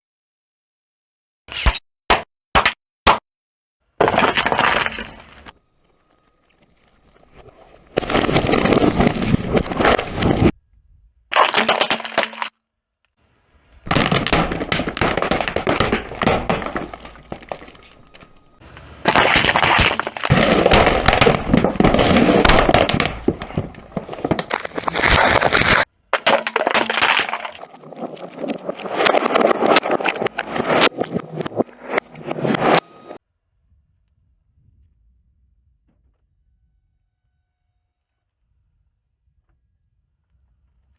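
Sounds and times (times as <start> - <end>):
tyre crushing objects: 1.5 - 3.2, 4.0 - 5.5, 11.3 - 12.5, 18.6 - 23.0, 24.5 - 27.6.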